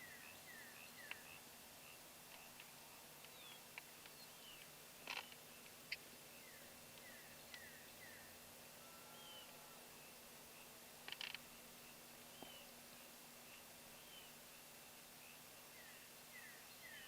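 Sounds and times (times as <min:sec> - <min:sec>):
birds chirping: 0:00.0 - 0:02.6, 0:11.4 - 0:14.4
rustle: 0:00.0 - 0:17.0.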